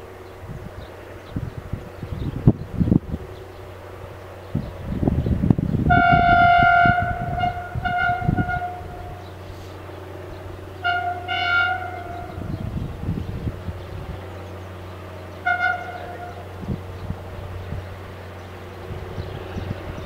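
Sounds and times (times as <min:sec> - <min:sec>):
diesel locomotive horn: 0:05.7 - 0:20.0.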